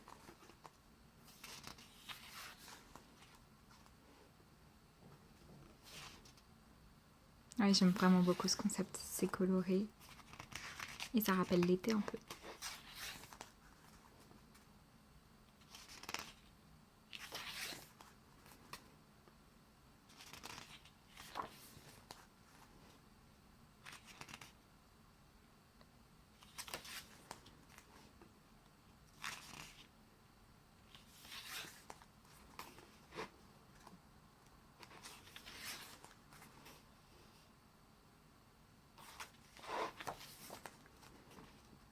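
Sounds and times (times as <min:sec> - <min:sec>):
pages turning rustle: 0:00.0 - 0:04.0, 0:05.7 - 0:06.4, 0:10.0 - 0:14.7, 0:15.6 - 0:16.5, 0:17.1 - 0:18.9, 0:20.1 - 0:23.0, 0:23.8 - 0:24.6, 0:26.4 - 0:28.1, 0:29.1 - 0:29.9, 0:30.9 - 0:34.0, 0:34.8 - 0:36.8, 0:39.0 - 0:41.8.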